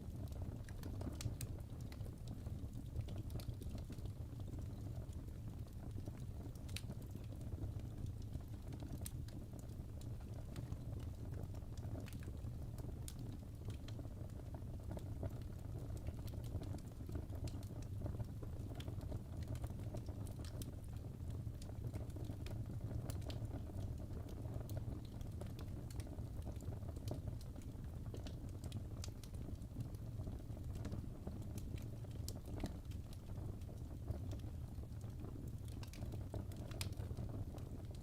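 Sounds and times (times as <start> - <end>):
logs crackling and popping: 0.0 - 38.0
low rumble of flame: 0.0 - 38.0.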